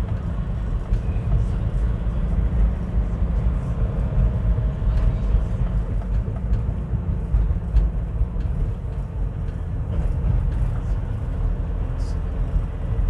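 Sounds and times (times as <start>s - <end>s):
vehicle engine and road noise: 0.0s - 13.0s.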